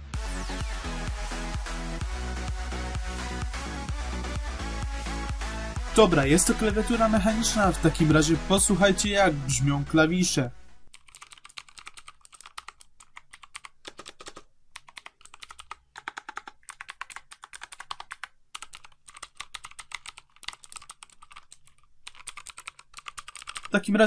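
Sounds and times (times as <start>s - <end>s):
clicky keyboard typing: 10.9s - 23.8s.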